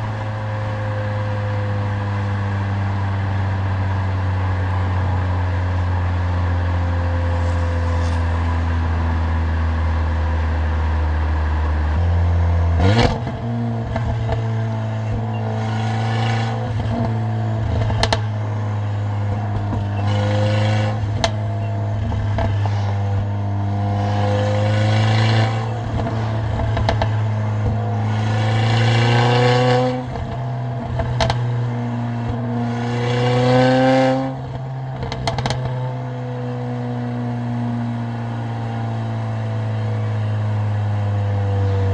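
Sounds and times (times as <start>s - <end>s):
car engine revving: 3.4s - 37.8s
exhaust pops: 25.8s - 27.8s, 30.0s - 31.5s, 34.4s - 35.8s.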